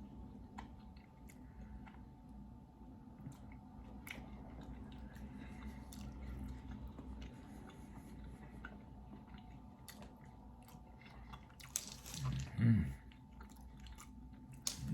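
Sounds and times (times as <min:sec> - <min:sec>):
faint steady hum: 0:00.0 - 0:14.9
wet squishing of chewing: 0:03.1 - 0:14.9.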